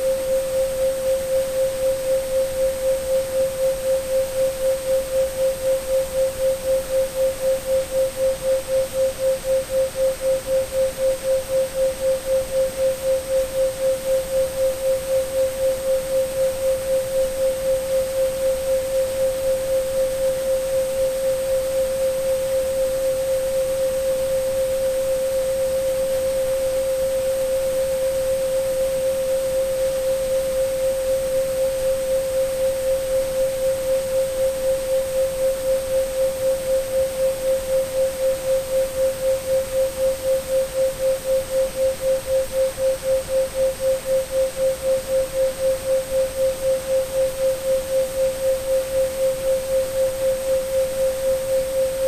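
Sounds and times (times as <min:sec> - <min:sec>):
faint high steady tone: 0:00.0 - 0:52.0
pulsing sine tone: 0:00.0 - 0:52.0
steady noise hiss: 0:00.0 - 0:52.0.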